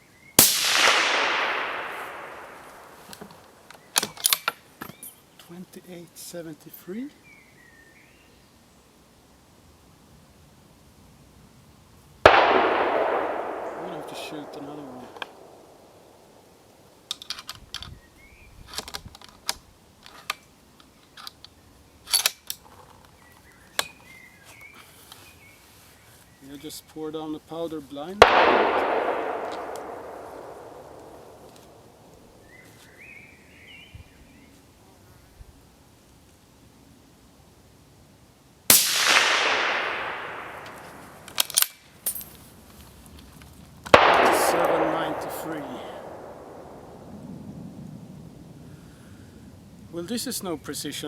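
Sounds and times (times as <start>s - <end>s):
suppressed rifle shot with echo: 0.4s - 4.1s, 12.2s - 16.6s, 28.2s - 32.4s, 38.7s - 41.4s, 43.9s - 47.8s
rifle bolt metallic clicks: 0.6s - 5.0s, 28.2s - 31.8s, 38.9s - 42.3s, 43.9s - 46.8s
rifle bolt clicks and clacks: 40.6s - 42.3s.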